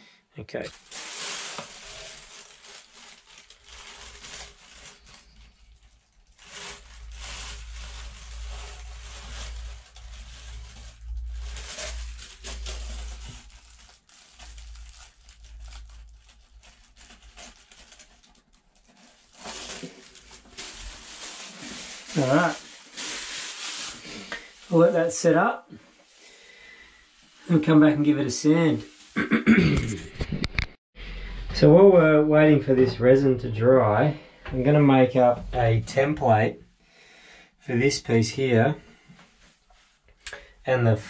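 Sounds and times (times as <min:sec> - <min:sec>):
scraping and rustling filler: 0:00.7 - 0:26.4.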